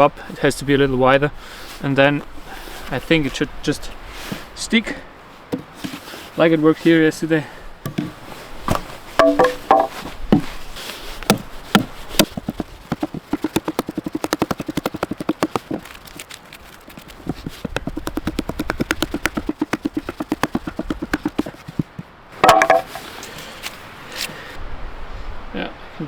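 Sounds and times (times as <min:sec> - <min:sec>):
wood knocking on wood: 0:05.5 - 0:06.0, 0:07.8 - 0:10.5, 0:11.3 - 0:16.2, 0:16.9 - 0:23.0.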